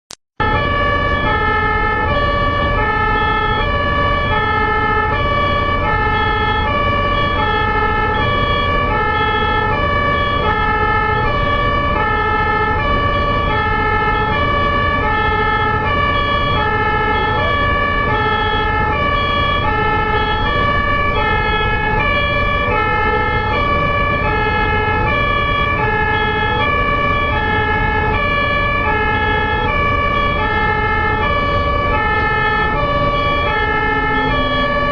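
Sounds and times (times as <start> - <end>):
traffic rumble: 0.4 - 34.9
two-tone ambulance siren: 0.4 - 34.9.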